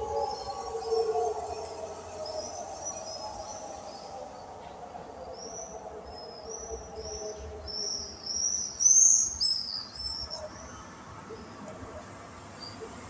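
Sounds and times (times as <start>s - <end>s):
small birds chirping: 6.2s - 10.8s.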